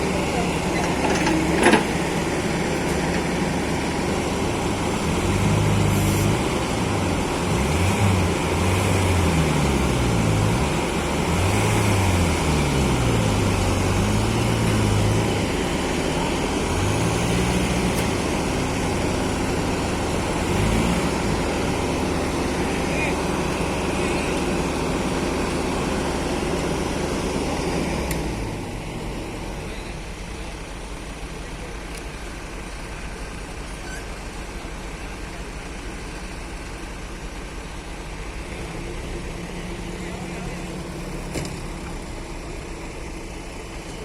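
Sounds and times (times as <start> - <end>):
excavator diesel engine running: 0.0 - 44.0.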